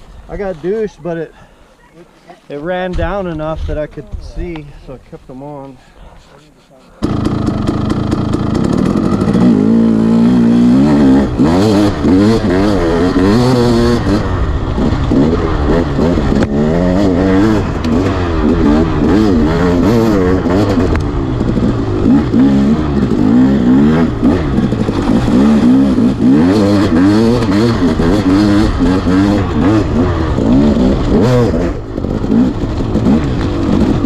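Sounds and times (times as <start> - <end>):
dirt bike engine revving: 7.0 - 34.0.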